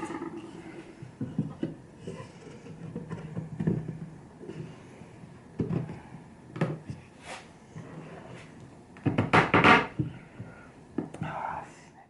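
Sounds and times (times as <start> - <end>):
wooden knocks and clatter: 1.2 - 4.1, 9.0 - 10.2.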